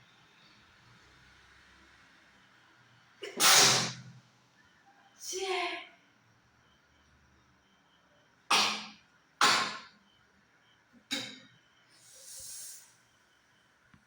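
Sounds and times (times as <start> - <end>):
person sneezing: 3.2 - 4.0
soft breathy hiss: 12.0 - 13.0.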